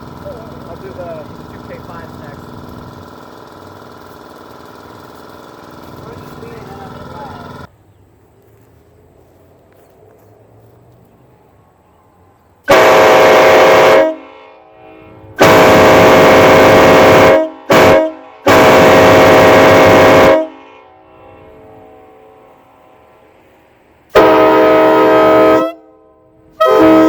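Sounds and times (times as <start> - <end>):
locomotive air horn blasts: 12.7 - 23.3, 24.1 - 27.0.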